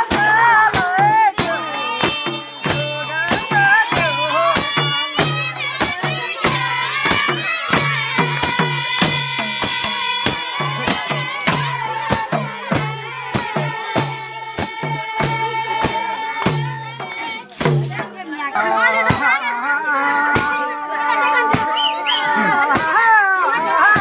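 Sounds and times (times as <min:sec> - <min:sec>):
hand drum beat: 0:00.0 - 0:24.0
folk melody bending in pitch: 0:18.4 - 0:24.0.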